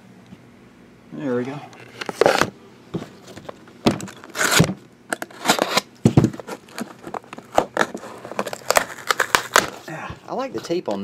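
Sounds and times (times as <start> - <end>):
packaging crinkling and rustling: 1.8 - 9.9.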